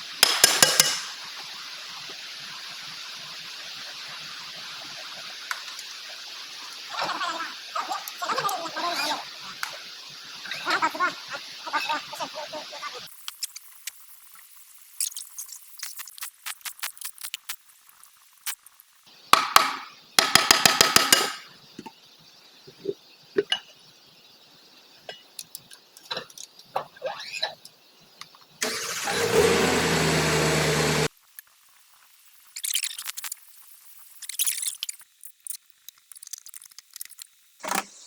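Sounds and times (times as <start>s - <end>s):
power tool running: 28.6s - 31.1s.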